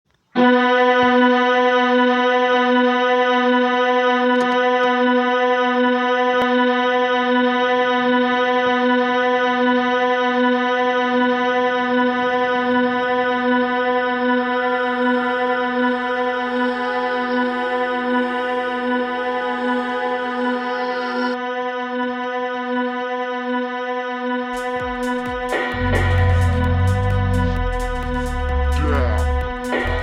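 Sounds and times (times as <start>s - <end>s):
organ-like drone note: 9.8s - 19.9s, 24.5s - 30.0s.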